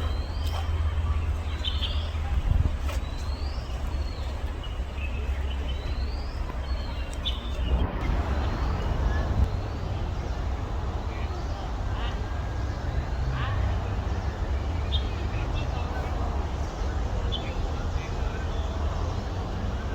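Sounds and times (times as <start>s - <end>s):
low rumble: 0.0s - 12.7s.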